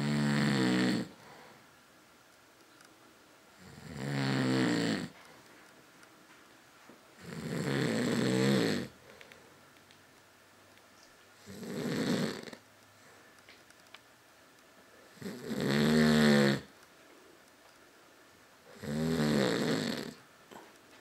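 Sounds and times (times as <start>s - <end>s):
low buzzing snores: 0.0s - 1.6s, 3.5s - 5.2s, 7.2s - 9.0s, 11.4s - 12.6s, 15.0s - 16.7s, 18.7s - 20.2s.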